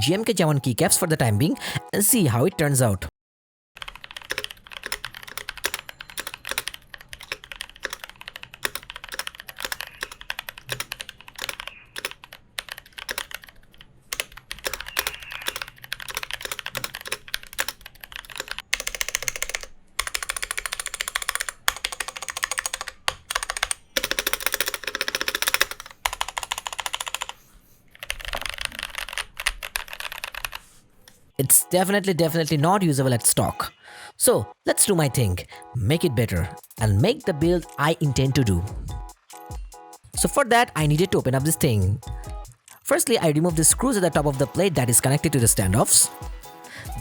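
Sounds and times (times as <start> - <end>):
mechanical keyboard key clacks: 14.2 - 27.3.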